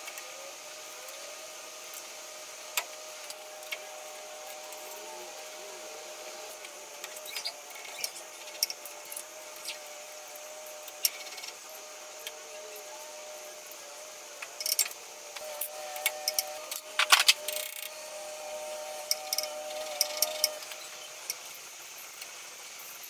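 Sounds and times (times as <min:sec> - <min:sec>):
stepper motors whining: 0:00.0 - 0:23.0
sharp clicks: 0:16.7 - 0:17.9.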